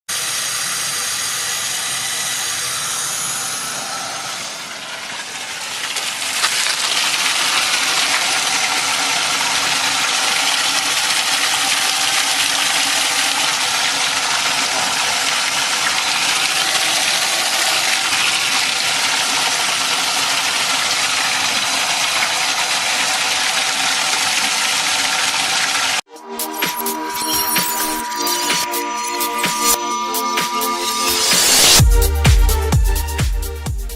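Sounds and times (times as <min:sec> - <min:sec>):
water hissing from a leaking pipe: 0:00.1 - 0:33.2.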